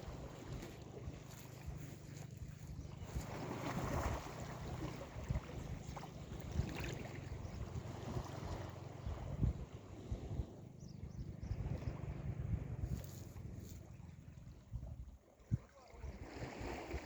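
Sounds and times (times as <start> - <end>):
sea waves washing: 0.0 - 10.8
wind buffeting microphone: 0.0 - 17.0.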